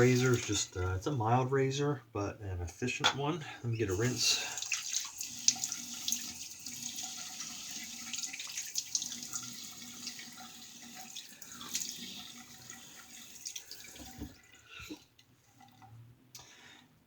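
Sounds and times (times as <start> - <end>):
tap water splashing in sink: 0.0 - 0.7, 3.9 - 15.0.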